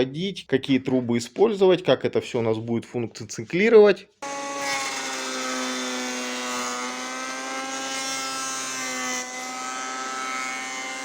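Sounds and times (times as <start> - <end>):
woodworking machine humming whine: 4.2 - 11.0.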